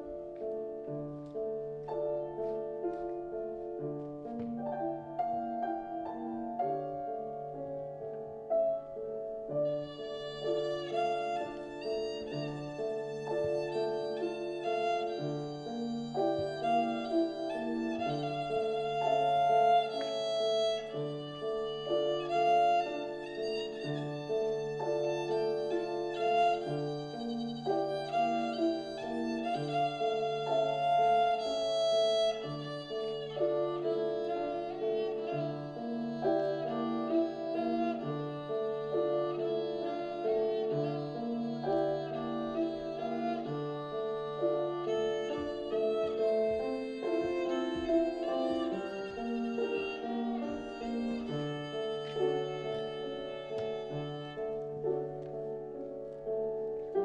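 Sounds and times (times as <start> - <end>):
bowed violin melody: 0.0 - 57.0
piano accompaniment: 0.0 - 57.0.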